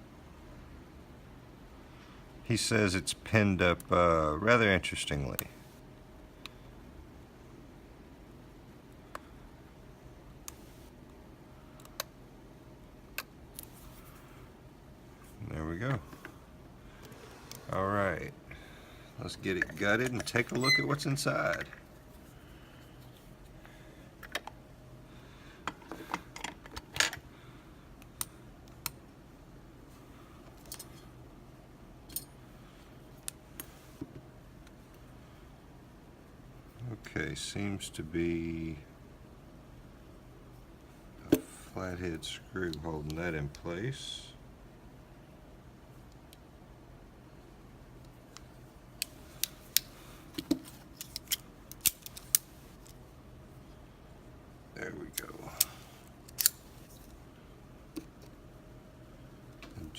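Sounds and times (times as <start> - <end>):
small metal clicks: 48.4 - 53.0, 55.6 - 56.6.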